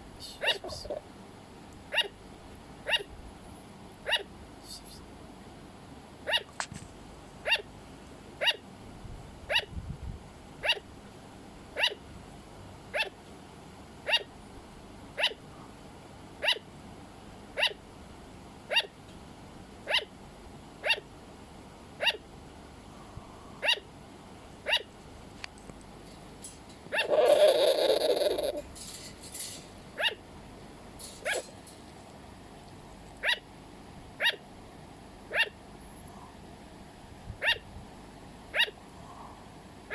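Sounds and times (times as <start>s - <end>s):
sugar glider barking: 0.2s - 1.0s, 1.9s - 2.2s, 2.8s - 3.1s, 4.0s - 4.4s, 6.2s - 6.7s, 7.4s - 7.7s, 8.4s - 8.6s, 9.5s - 9.7s, 10.6s - 10.9s, 11.8s - 12.0s, 12.9s - 13.2s, 14.0s - 14.3s, 15.2s - 15.4s, 16.4s - 16.7s, 17.6s - 17.8s, 18.7s - 19.0s, 19.8s - 20.1s, 20.8s - 21.1s, 22.0s - 22.2s, 23.6s - 23.9s, 24.6s - 24.9s, 26.9s - 28.7s, 29.5s - 30.3s, 31.0s - 31.8s, 33.1s - 33.5s, 34.2s - 34.5s, 35.3s - 35.6s, 37.4s - 37.7s, 38.5s - 38.8s.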